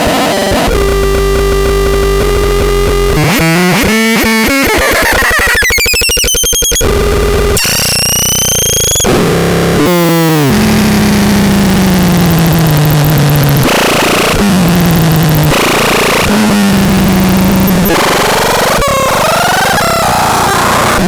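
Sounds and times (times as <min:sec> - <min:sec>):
harsh distorted electronic noise: 0:00.0 - 0:21.0
low buzzing drone: 0:06.9 - 0:18.6
tones sweeping downward: 0:07.6 - 0:09.2.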